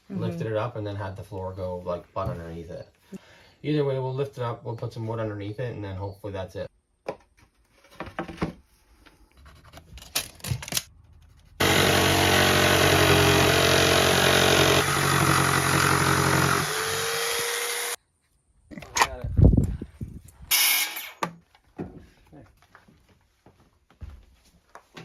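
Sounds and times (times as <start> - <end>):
power tool running: 11.6 - 18.0.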